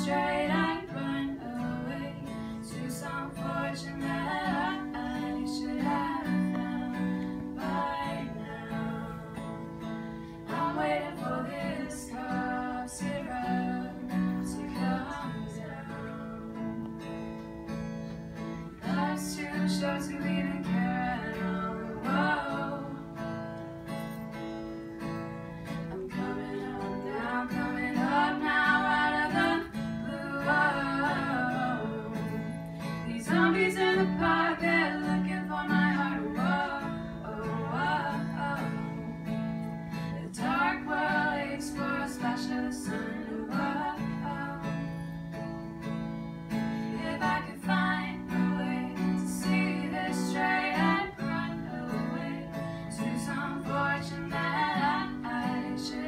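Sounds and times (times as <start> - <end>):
acoustic guitar chords: 0.0 - 56.0
person singing: 25.9 - 32.5, 33.1 - 39.2, 46.9 - 56.0.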